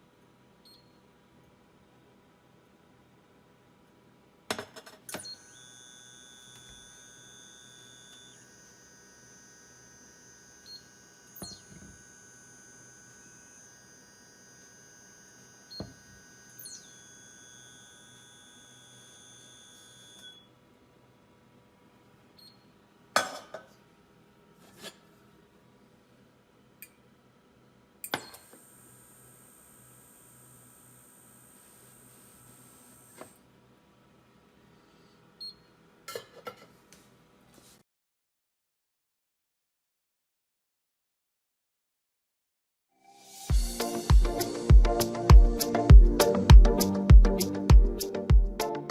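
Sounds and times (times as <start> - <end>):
cooktop high-pitched whine: 4.5 - 25.6, 27.7 - 33.5, 43.1 - 44.7.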